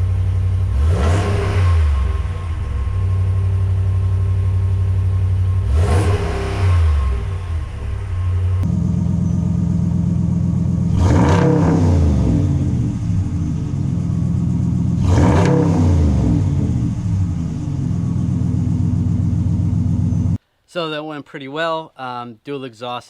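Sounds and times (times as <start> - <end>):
truck engine idling and revving: 0.0 - 20.4.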